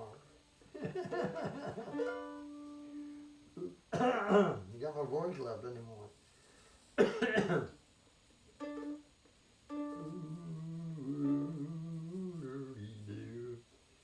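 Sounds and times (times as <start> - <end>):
mandolin melody: 0.0 - 3.8, 8.6 - 9.1, 9.7 - 12.4
mandolin strum: 1.1 - 3.8, 8.6 - 9.1.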